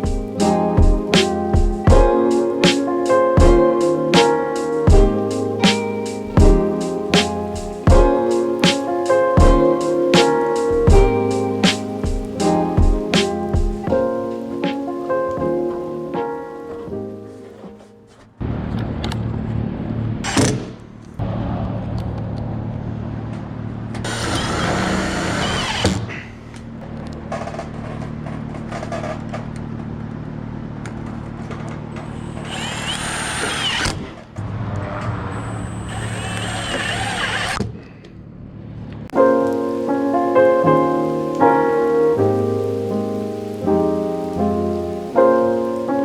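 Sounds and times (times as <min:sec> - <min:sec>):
harsh machine bursts: 0:24.1 - 0:26.4, 0:32.1 - 0:34.2, 0:35.3 - 0:37.6.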